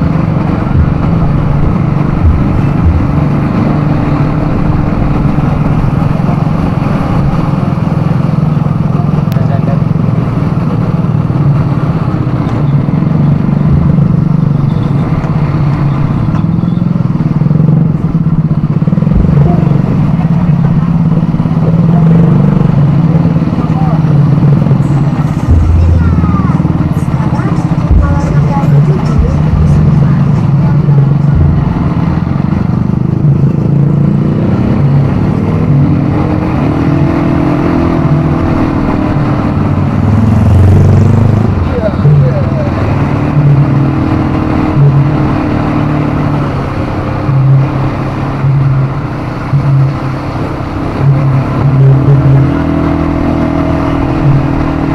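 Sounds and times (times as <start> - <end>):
atv engine running: 0.0 - 54.9.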